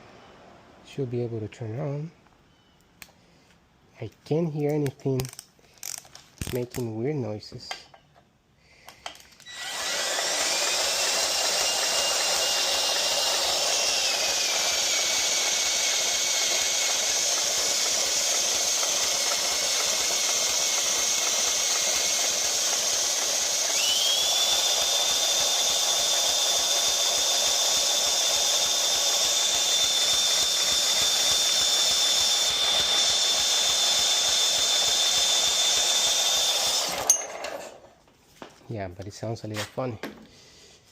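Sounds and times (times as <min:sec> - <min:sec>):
lawn mower engine running: 0:11.5 - 0:37.8.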